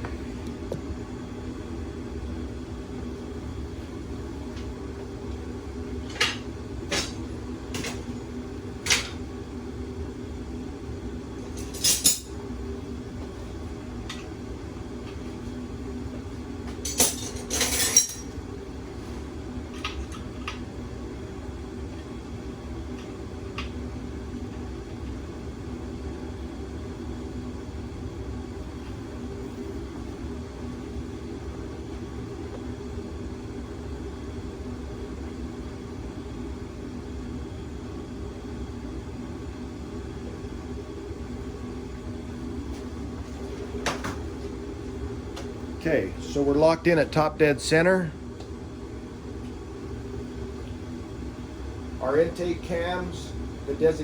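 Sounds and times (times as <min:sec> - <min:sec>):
steady low hum: 0:00.0 - 0:54.0
metal tools clinking: 0:16.9 - 0:18.3.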